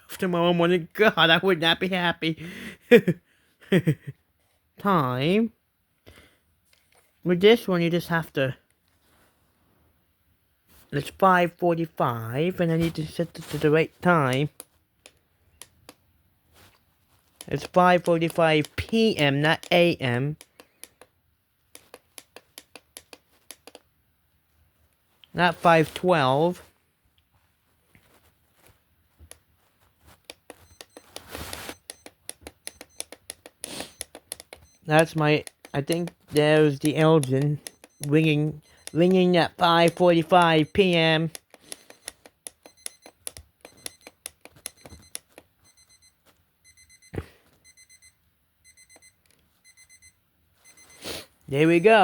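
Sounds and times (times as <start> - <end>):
clock dial clicking: 17.4 - 21.1, 21.7 - 23.8, 30.2 - 45.9
handling rustle: 27.5 - 31.8.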